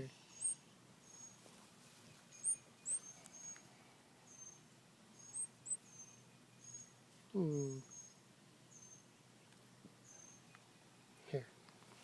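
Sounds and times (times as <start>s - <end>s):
baby bird chirping: 0.3s - 1.4s, 2.3s - 3.6s, 4.3s - 9.1s.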